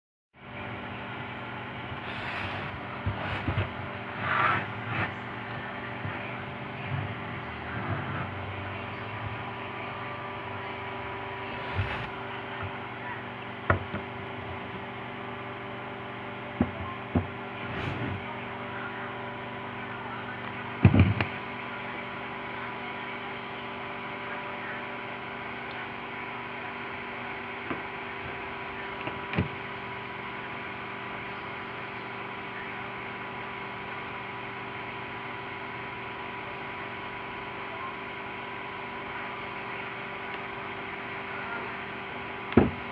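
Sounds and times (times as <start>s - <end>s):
steady electrical hum: 0.4s - 42.9s.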